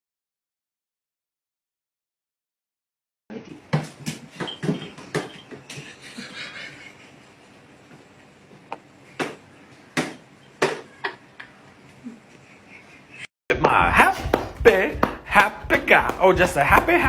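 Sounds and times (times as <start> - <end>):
sharp knocks and thumps: 13.5 - 17.0.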